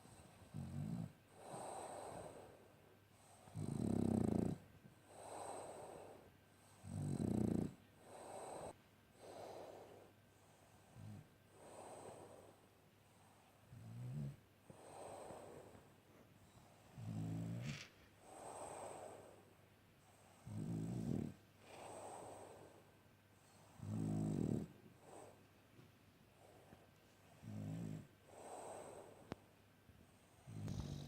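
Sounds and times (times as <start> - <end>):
dog snoring: 0.0 - 2.6, 3.2 - 10.1, 10.9 - 12.6, 13.6 - 15.9, 16.5 - 19.4, 20.1 - 22.8, 23.4 - 25.5, 27.4 - 29.4, 30.4 - 31.0
soft airy breaths: 0.0 - 31.0.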